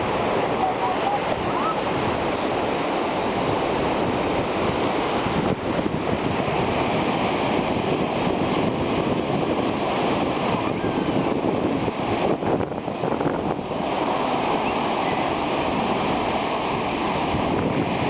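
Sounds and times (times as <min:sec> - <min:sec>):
wind blowing across microphone: 0:00.0 - 0:18.0.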